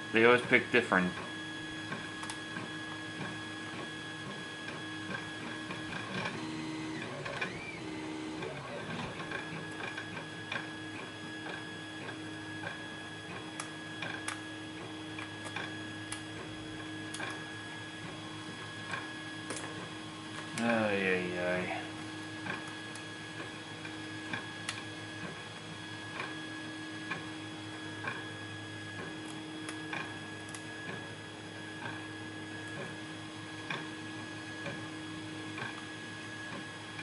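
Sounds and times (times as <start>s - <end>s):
steady electrical hum: 0.0s - 8.5s, 9.1s - 37.0s.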